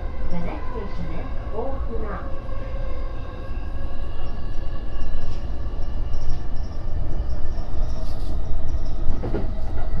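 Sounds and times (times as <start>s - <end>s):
train wheels rumbling on rails: 4.1s - 10.0s.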